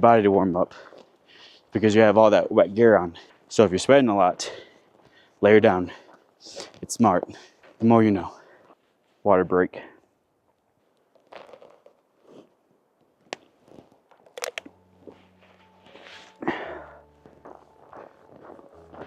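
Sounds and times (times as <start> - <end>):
water bottle crinkling and clicking: 11.0 - 12.0, 13.0 - 14.8.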